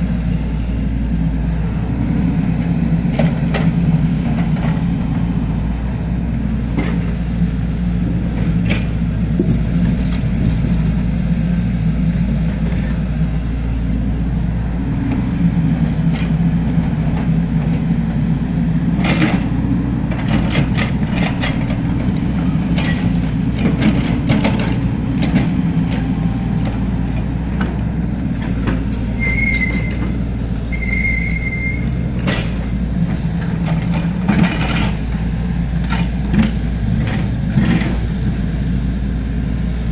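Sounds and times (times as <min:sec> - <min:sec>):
diesel engine running: 0:00.0 - 0:39.9
high-pitched squeals: 0:29.1 - 0:32.0.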